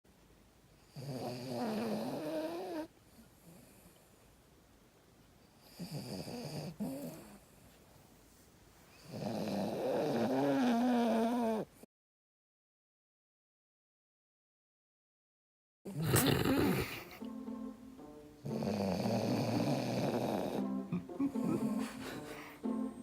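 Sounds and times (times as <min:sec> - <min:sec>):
small dog snoring: 0:00.8 - 0:04.1, 0:05.6 - 0:07.6, 0:09.0 - 0:11.9, 0:15.9 - 0:17.3, 0:18.4 - 0:21.8.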